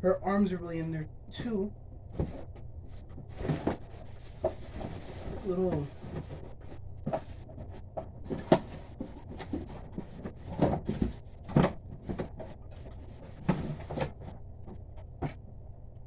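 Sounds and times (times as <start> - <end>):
cardboard and plastic packaging handled: 2.1 - 15.3.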